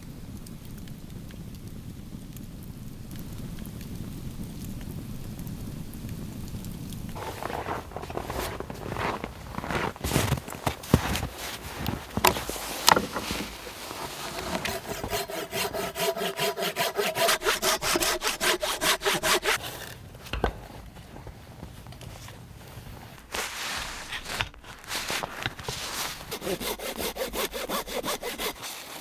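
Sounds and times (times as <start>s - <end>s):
hand saw cutting log: 7.2s - 20.6s, 23.3s - 29.0s.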